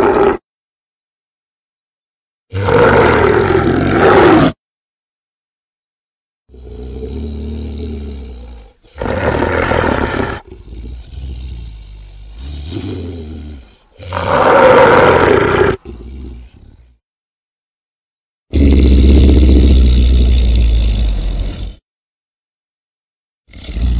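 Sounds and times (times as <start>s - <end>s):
monster roars: 2.5s - 4.6s, 6.5s - 11.8s, 12.4s - 16.5s
monster growling: 6.5s - 16.9s, 18.5s - 21.8s.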